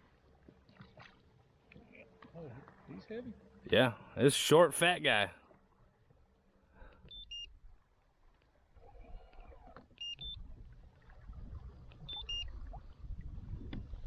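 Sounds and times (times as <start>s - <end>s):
short electronic beeps: 12.1s - 12.5s.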